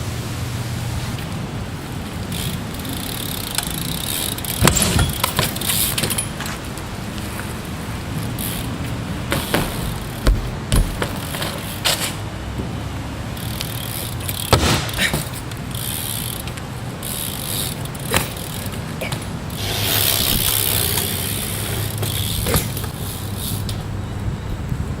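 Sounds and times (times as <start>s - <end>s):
bike clicks and knocks: 1.1s - 25.0s
bike hub ratcheting: 1.9s - 12.3s, 13.3s - 24.0s.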